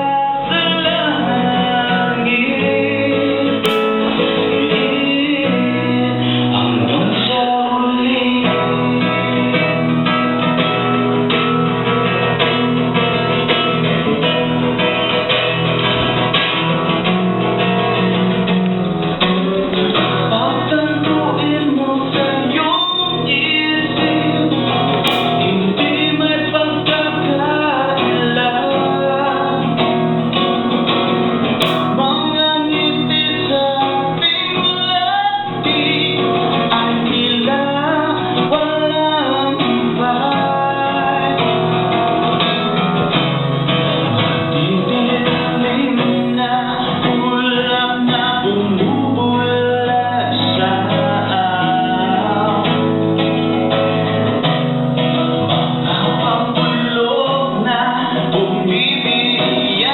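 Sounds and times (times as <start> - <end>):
steady accompaniment: 3.6 - 5.2, 24.0 - 27.0, 29.9 - 32.5.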